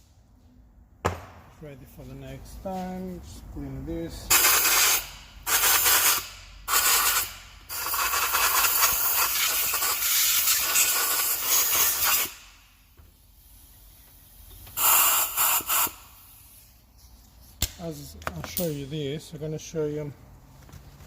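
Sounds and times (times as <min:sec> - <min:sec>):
compressed air blow gun hissing: 0:04.3 - 0:16.8.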